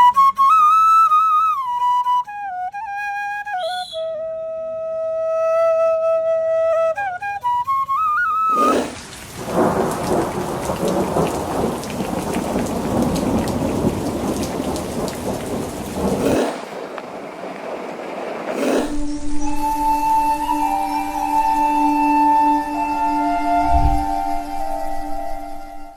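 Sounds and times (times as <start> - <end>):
thunder rumbling: 8.5 - 19.9, 22.7 - 25.9
heavy rain falling: 8.5 - 25.7.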